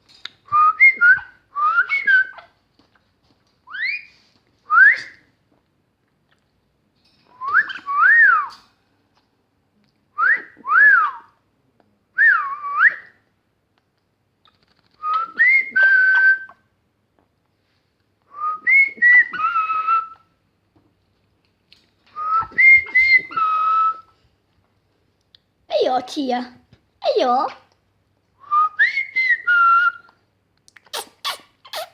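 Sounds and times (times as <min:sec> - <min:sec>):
person whistling: 0:04.7 - 0:05.2, 0:22.2 - 0:24.2.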